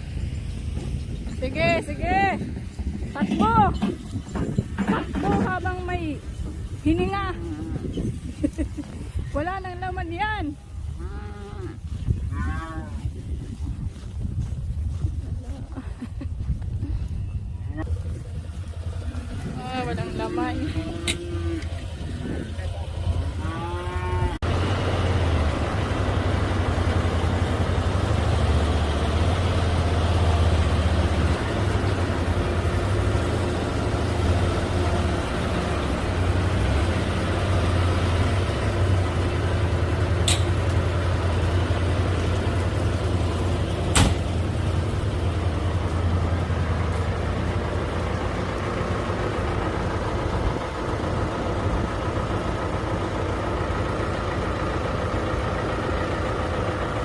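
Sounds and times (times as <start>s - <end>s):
vehicle engine humming: 0.0s - 57.0s
sharp clicks or knocks: 40.2s - 40.6s, 43.9s - 44.3s.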